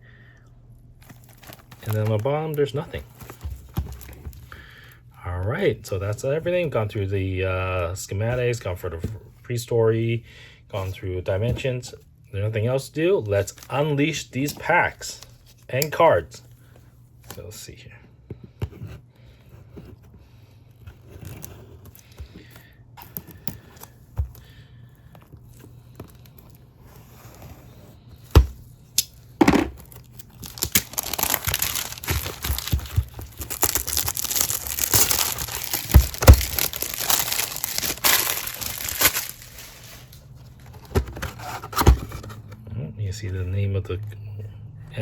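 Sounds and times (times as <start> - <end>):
wrapping tearing and crinkling: 1.0 - 4.8, 28.9 - 41.6.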